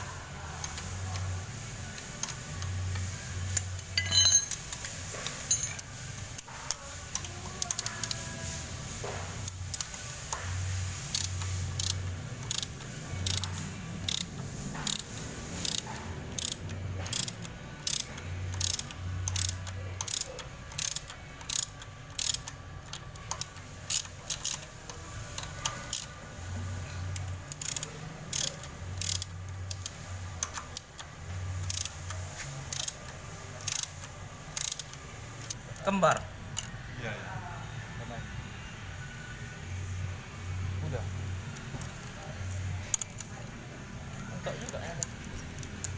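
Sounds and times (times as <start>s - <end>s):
hand tools clinking on metal: 3.9s - 6.0s.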